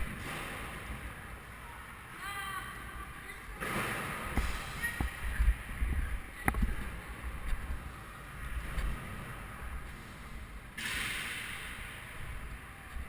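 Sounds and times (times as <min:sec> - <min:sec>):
wind buffeting microphone: 0:04.4 - 0:09.9.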